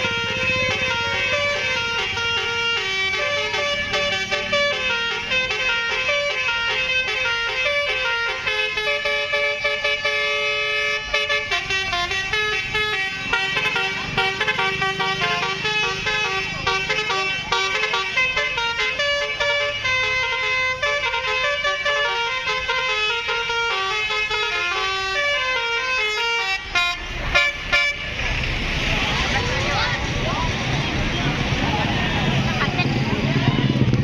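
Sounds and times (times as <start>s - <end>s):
musical multi-tone bus air horns: 0.0s - 34.0s.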